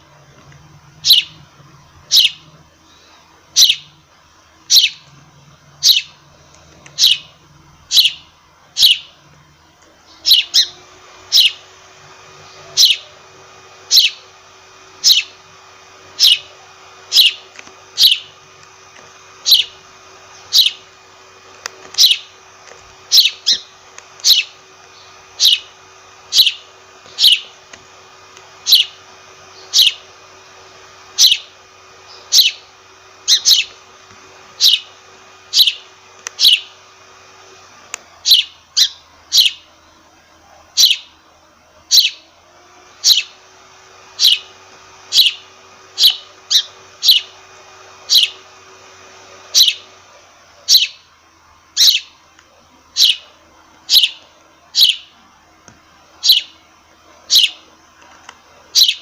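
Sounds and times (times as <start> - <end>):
sparrow chirping: 0.9 - 4.0, 4.6 - 5.1, 5.8 - 6.2, 6.8 - 9.2, 10.1 - 11.7, 12.3 - 13.2, 13.8 - 15.4, 16.1 - 18.4, 19.2 - 21.0, 21.8 - 27.7, 28.5 - 30.2, 31.1 - 33.8, 34.5 - 36.8, 38.2 - 39.7, 40.7 - 41.2, 41.9 - 42.3, 43.0 - 43.4, 44.1 - 48.6, 49.4 - 50.0, 50.6 - 51.1, 51.8 - 52.2, 53.0 - 55.2, 56.2 - 56.6, 57.2 - 57.7, 58.7 - 59.0.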